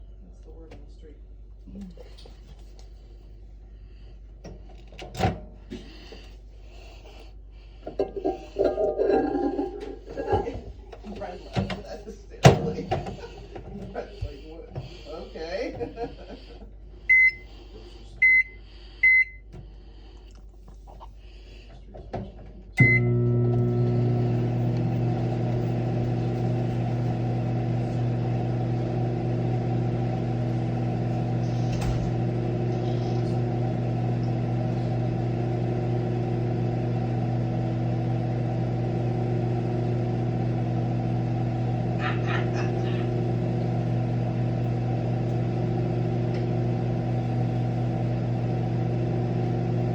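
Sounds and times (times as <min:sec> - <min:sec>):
microwave humming: 0:07.8 - 0:13.8, 0:17.1 - 0:17.6, 0:22.8 - 0:49.9
microwave keypad beeps: 0:17.1 - 0:17.4, 0:18.2 - 0:19.4, 0:22.8 - 0:23.1.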